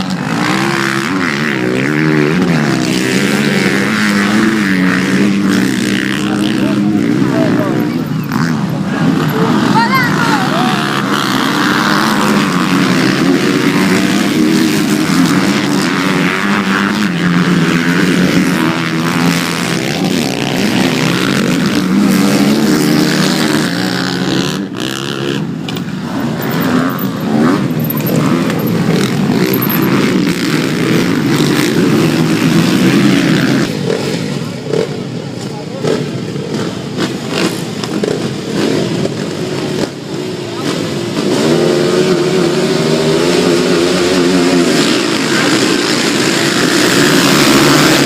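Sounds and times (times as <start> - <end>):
dirt bike engines revving: 0.0 - 48.0.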